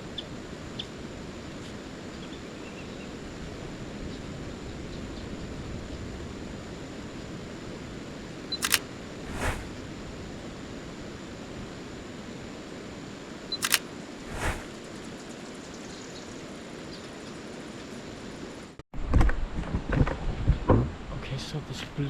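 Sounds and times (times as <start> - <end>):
outdoor background hiss: 0.0 - 18.8
camera focus beep: 8.6 - 9.7, 13.6 - 14.7
camera shutter double click: 8.6 - 9.7, 13.6 - 14.7.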